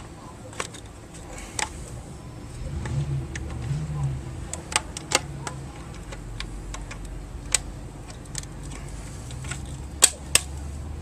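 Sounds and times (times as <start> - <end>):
hand tools clicking and tapping: 4.5 - 10.6.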